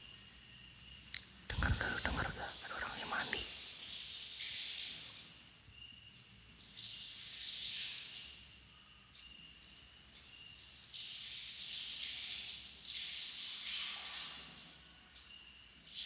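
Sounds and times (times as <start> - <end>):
water splashing and pouring: 10.6 - 14.8.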